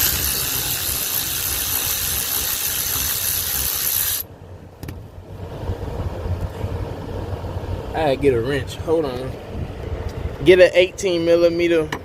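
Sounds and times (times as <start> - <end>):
electric ratchet running: 0.0 - 4.2.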